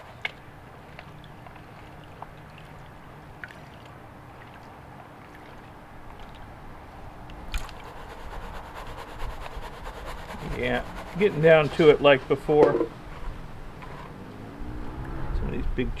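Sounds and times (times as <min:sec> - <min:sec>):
water sloshing in a pan: 0:00.0 - 0:06.9.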